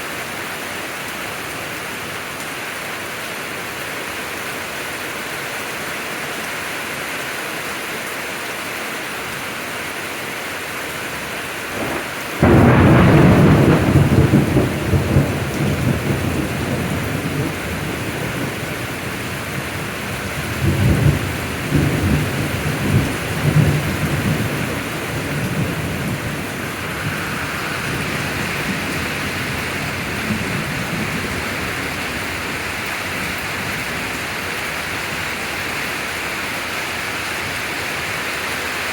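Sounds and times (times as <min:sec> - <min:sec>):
steady rain: 0:00.0 - 0:38.9
thunder rumbling: 0:11.7 - 0:35.5.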